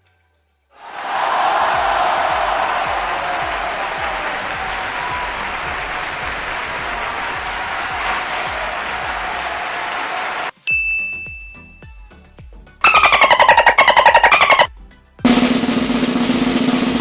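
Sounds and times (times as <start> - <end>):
applause: 0.8 - 10.5
bright bell ding: 10.6 - 11.8.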